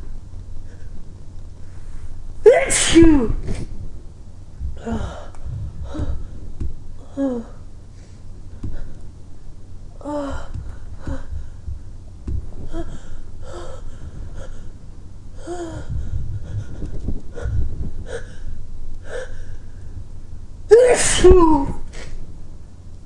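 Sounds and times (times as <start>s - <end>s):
low muffled thumps: 10.3s - 15.0s
man gasping breaths: 12.5s - 20.1s.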